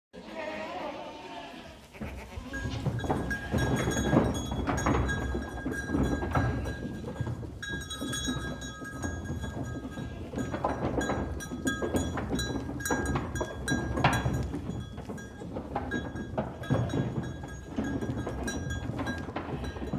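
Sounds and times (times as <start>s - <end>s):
animal bells clanking: 2.0s - 19.9s.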